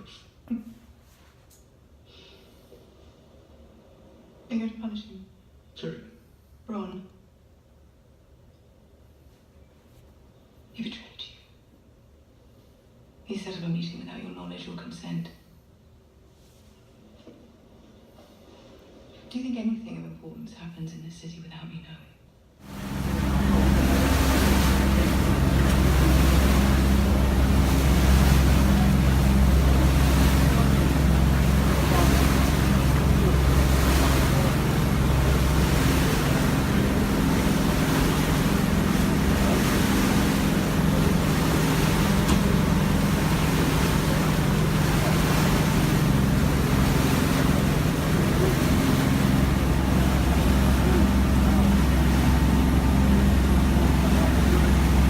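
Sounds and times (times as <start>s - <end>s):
boat engine drone: 22.6s - 55.0s
rushing water: 22.6s - 55.0s
wind: 22.6s - 55.0s.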